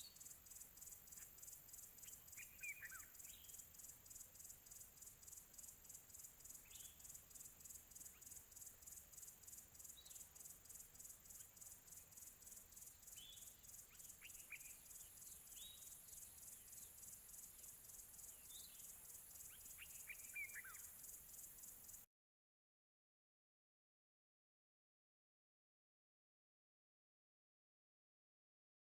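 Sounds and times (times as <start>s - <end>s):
bird chirps: 0.0s - 22.0s
insects chirping: 0.0s - 22.1s.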